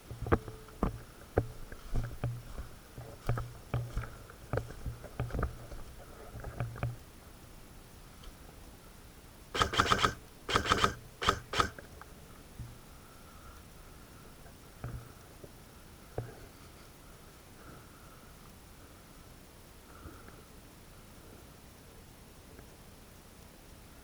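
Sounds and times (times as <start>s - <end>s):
sharp clicks and knocks: 0.1s - 2.4s, 3.2s - 5.8s, 9.6s - 11.9s
rapid clicking: 9.6s - 11.8s.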